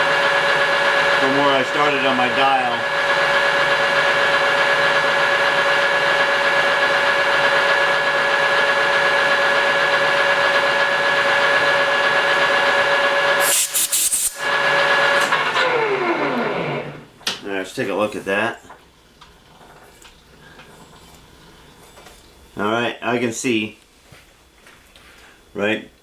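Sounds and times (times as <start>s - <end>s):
metal lathe whining: 0.0s - 17.1s.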